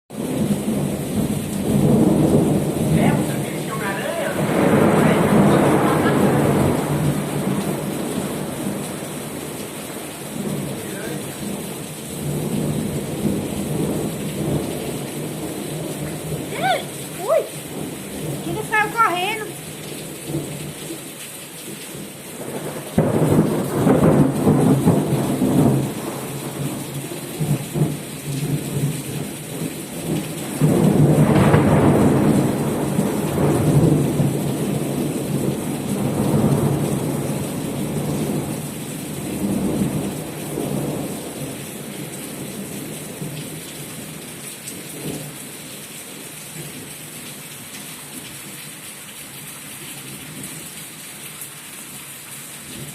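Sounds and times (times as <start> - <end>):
thunder rumbling: 0.1 - 20.8, 22.4 - 43.4
steady rain: 0.1 - 52.9.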